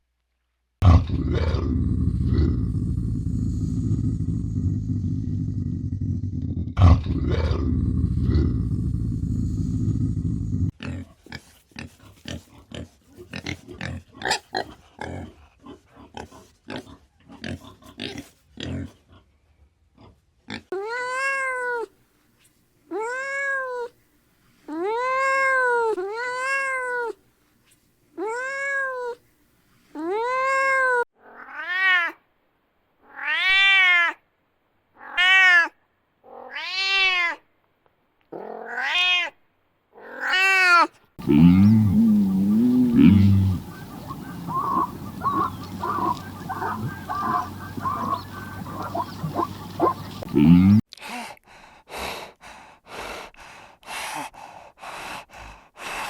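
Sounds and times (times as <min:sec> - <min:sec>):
low rumble: 0:00.8 - 0:10.7
cat meowing: 0:38.4 - 0:39.4.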